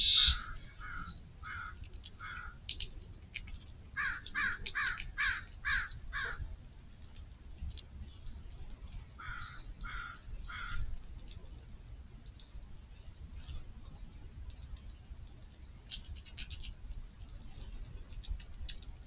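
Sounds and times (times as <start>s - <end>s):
bird harsh calls: 0.0s - 2.6s.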